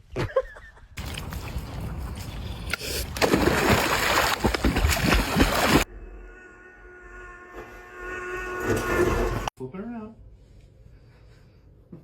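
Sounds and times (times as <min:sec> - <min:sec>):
water sloshing and splashing: 0:01.0 - 0:05.9.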